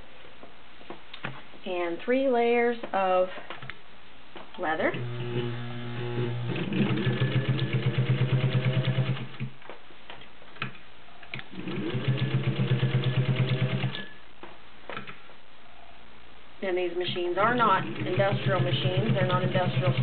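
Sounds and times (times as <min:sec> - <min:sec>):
sewing machine stitching: 0:05.0 - 0:09.5, 0:11.5 - 0:14.1, 0:17.6 - 0:20.0.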